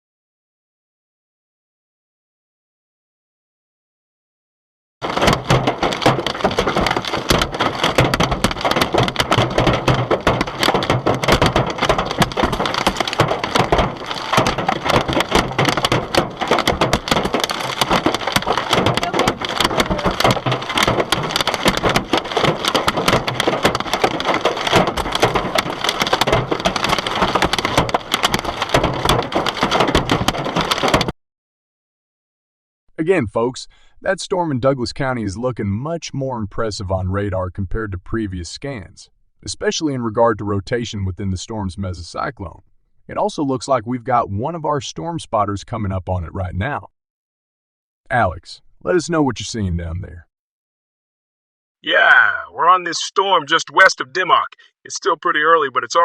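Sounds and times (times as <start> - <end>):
heavy rain or hail pelting hard surface: 5.0 - 31.1.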